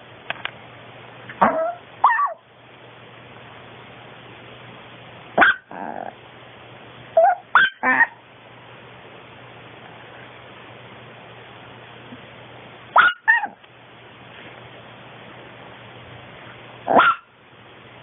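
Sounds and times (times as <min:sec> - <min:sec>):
small dog yipping and barking: 0:01.4 - 0:02.5, 0:05.4 - 0:06.1, 0:07.1 - 0:08.2, 0:12.9 - 0:13.6, 0:16.9 - 0:17.4.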